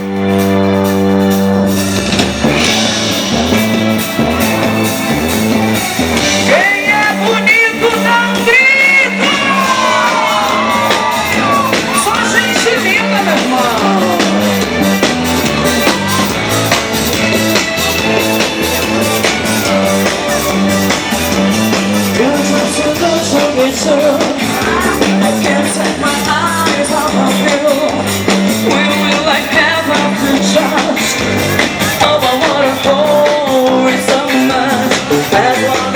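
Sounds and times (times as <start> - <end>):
keyboard chords: 0.0 - 35.9
live band playing: 0.0 - 35.9
people shouting and whooping: 6.5 - 14.4, 15.4 - 16.7.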